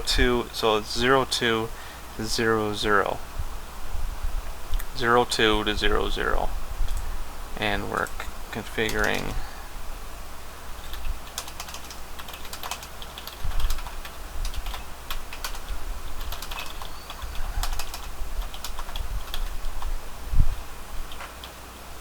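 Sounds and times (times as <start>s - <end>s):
typing on computer keyboard: 8.8s - 9.4s, 10.8s - 19.9s.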